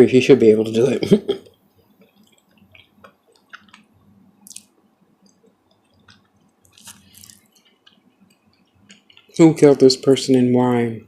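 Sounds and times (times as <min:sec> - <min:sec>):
wet chewing and lip smacking: 0:01.8 - 0:09.4.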